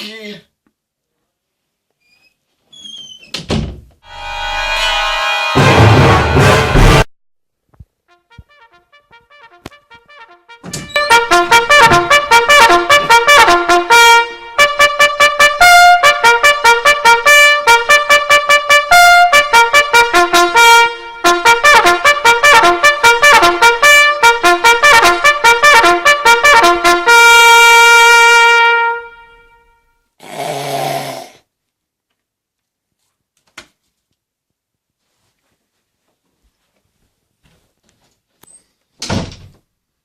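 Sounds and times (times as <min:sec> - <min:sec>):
trumpet playing bugle call: 0:04.1 - 0:07.1, 0:08.1 - 0:30.0.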